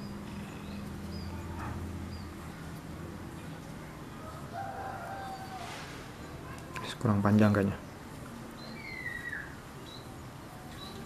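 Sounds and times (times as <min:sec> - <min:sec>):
bird calling: 0:08.6 - 0:10.1.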